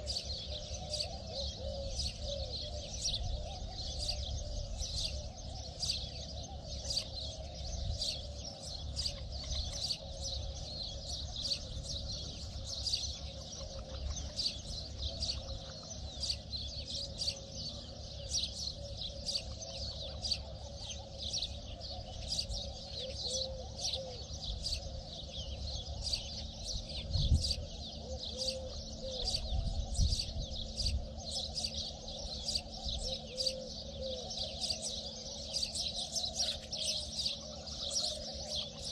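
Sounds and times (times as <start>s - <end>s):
low wavering bird call: 0.0s - 38.9s
small birds chirping: 0.0s - 38.9s.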